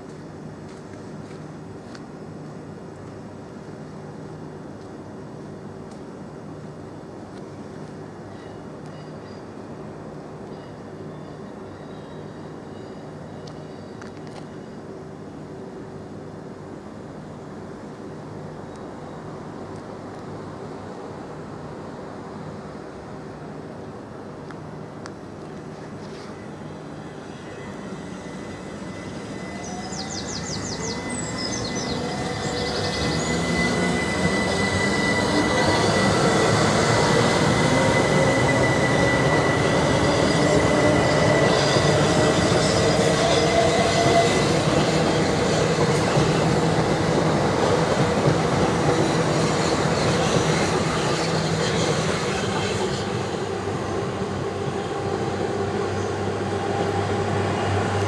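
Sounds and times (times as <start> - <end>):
rail grinder passing on track: 22.6 - 58.0
high-pitched whine: 26.2 - 58.0.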